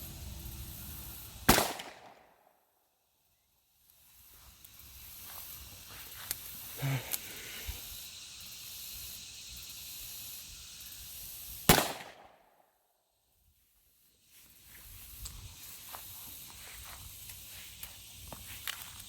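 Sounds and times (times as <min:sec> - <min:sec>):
steady outdoor hiss: 0:00.0 - 0:19.0
revolver shot: 0:01.5 - 0:02.2.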